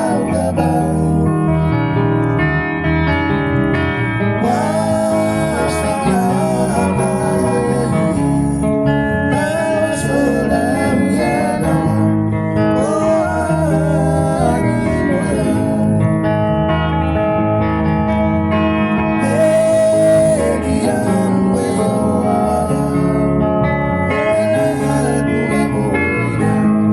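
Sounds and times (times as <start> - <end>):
person singing: 0.0 - 1.8, 4.4 - 16.0, 19.2 - 23.4, 24.1 - 26.9
guitars playing chords: 0.0 - 26.9.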